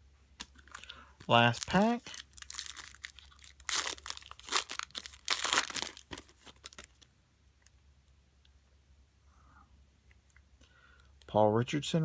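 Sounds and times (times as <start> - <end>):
foil wrapper tearing and crinkling: 1.4 - 7.0.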